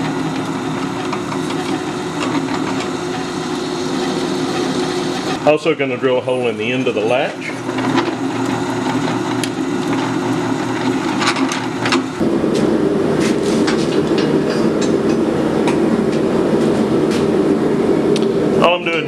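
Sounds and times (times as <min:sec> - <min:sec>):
drill press drilling steel: 0:00.2 - 0:05.6.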